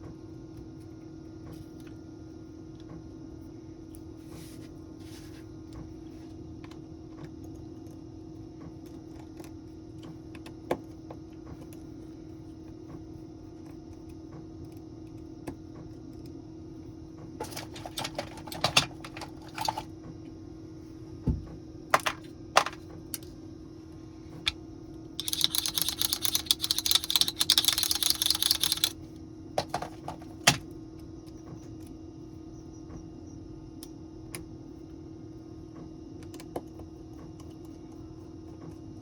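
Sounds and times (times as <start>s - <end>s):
steady low hum: 0.0s - 39.0s
small hand tools clicking: 25.2s - 28.9s.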